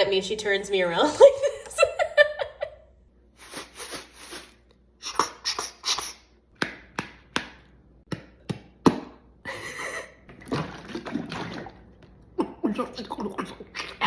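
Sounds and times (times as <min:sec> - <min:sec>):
beatboxed hissing bursts: 0:03.4 - 0:06.2.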